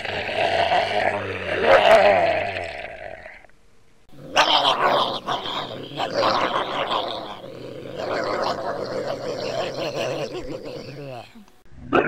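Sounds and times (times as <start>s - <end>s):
dog-like animal sound: 4.1s - 12.0s.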